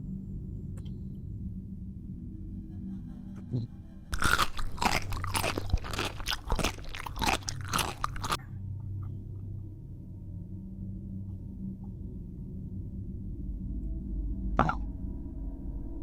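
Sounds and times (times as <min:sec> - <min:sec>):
low steady hum: 0:00.0 - 0:16.0
chips being crunched and chewed: 0:04.2 - 0:08.4.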